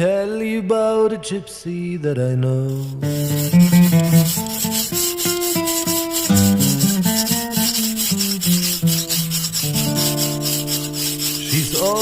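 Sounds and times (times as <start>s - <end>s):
knife scraping on whetstone: 2.7s - 12.0s.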